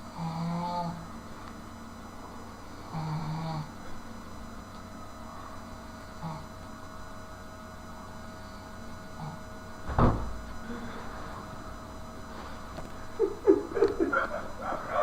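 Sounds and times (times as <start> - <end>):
low room hum: 0.0 - 15.0
loud sudden thump: 9.9 - 10.4.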